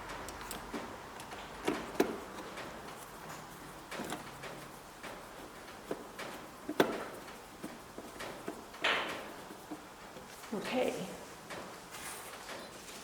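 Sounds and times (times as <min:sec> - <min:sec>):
scraping rustle: 0:01.3 - 0:13.0.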